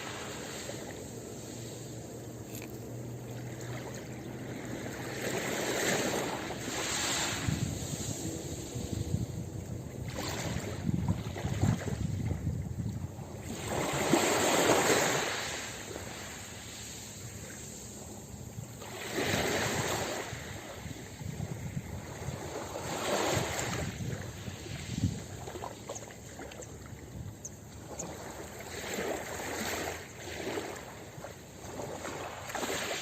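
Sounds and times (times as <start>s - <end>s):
ocean waves breaking on beach: 0.0s - 33.0s.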